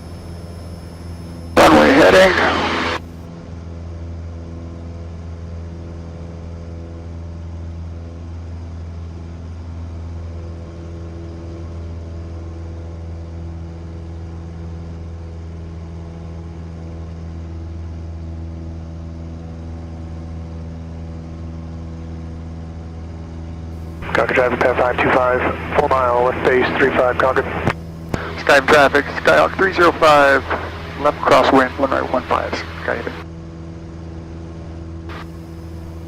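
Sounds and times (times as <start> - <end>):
propeller plane engine droning: 0.0 - 36.0.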